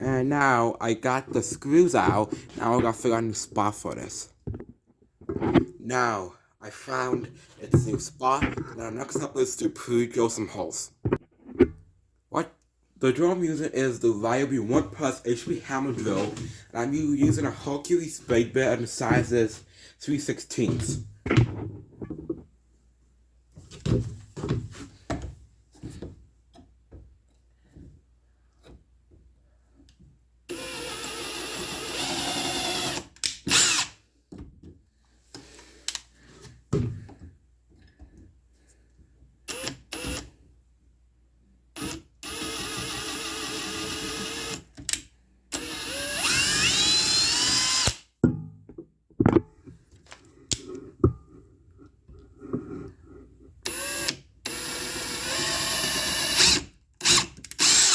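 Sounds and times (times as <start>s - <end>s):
cordless drill boring holes: 30.5s - 34.0s, 39.5s - 40.3s, 41.8s - 44.7s, 45.5s - 48.0s, 53.6s - 57.9s.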